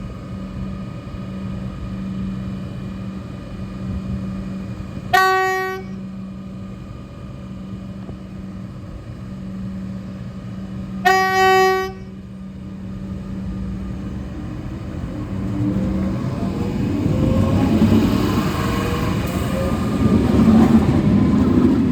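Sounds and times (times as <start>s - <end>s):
train hum: 0.0s - 21.9s
train horn blasts: 5.1s - 6.0s, 11.0s - 12.3s
traction motors whining: 12.9s - 21.9s.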